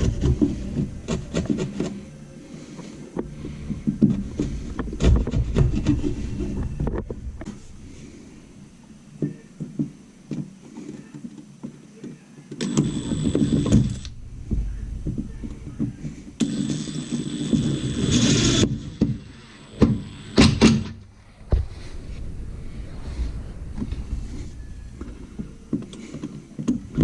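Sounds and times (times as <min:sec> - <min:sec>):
power tool motor whining: 0:12.6 - 0:14.2, 0:16.4 - 0:21.0.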